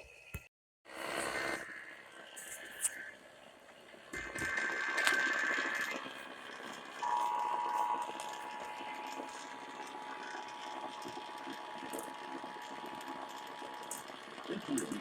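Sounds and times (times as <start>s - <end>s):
two-tone alert signal: 7.0s - 9.6s.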